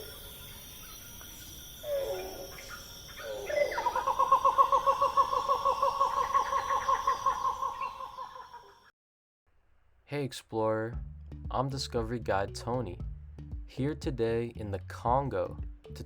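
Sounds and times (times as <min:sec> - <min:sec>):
bird falling call: 0:00.0 - 0:08.9
high insect drone: 0:00.0 - 0:08.9.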